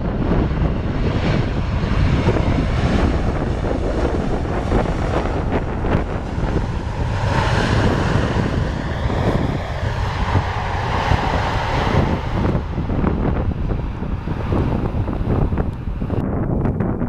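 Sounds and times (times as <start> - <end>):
jet airliner engine noise: 0.0 - 17.0
wind buffeting microphone: 0.0 - 17.0.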